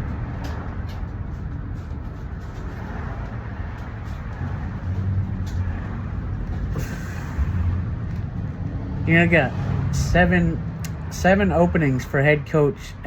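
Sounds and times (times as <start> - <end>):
bus engine and road rumble: 0.0 - 13.0
short air hiss: 6.7 - 7.6.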